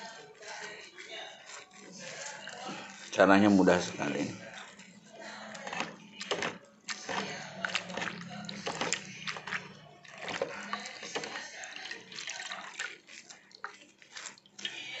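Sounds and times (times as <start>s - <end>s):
wet squelching of leaves: 0.0s - 15.0s
small water splashes: 5.7s - 15.0s
water dripping: 7.6s - 15.0s.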